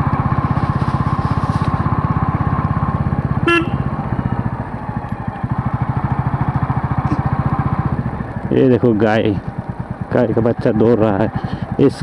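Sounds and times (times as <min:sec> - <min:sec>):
horn beep: 0:03.4 - 0:04.1.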